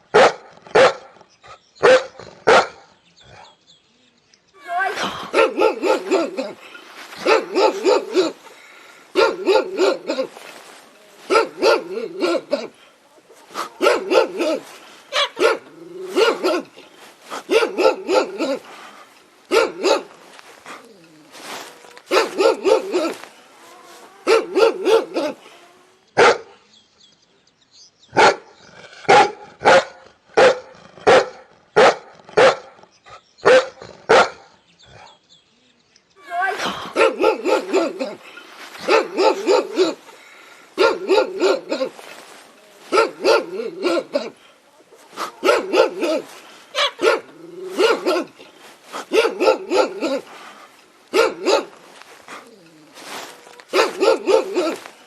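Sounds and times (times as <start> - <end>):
dog barking: 0.1 - 1.2, 1.8 - 2.9, 4.9 - 6.6, 7.2 - 8.5, 9.1 - 12.8, 13.5 - 18.7, 19.5 - 20.2, 22.1 - 23.3, 24.2 - 25.4, 26.2 - 26.6, 28.1 - 28.5, 29.1 - 32.8, 33.4 - 34.5, 36.4 - 38.2, 38.8 - 44.4, 45.1 - 50.4, 51.1 - 51.9, 53.0 - 55.0.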